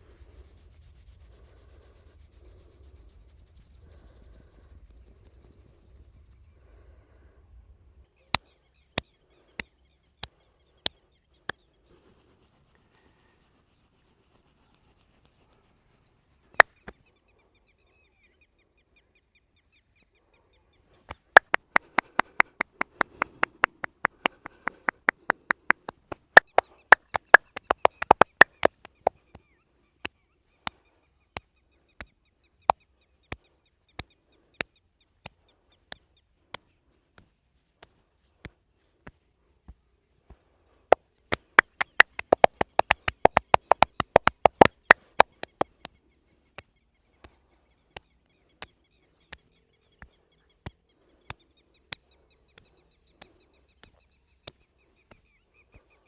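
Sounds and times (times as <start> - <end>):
hands slapping in massage: 21.1 - 29.4, 41.3 - 46.0.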